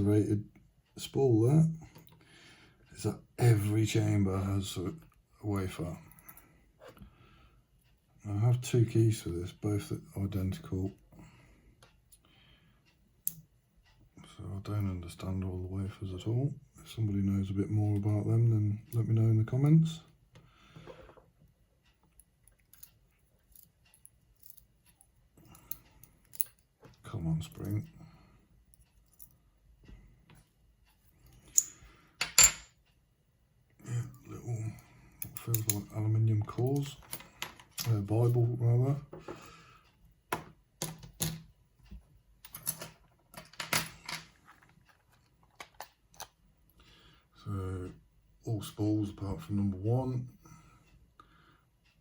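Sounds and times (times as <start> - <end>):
small metal parts clicking and scraping: 30.8 - 32.6, 35.2 - 35.9, 42.4 - 46.4
small clicks of metal lock parts: 35.2 - 35.9, 36.5 - 38.1, 40.4 - 46.4.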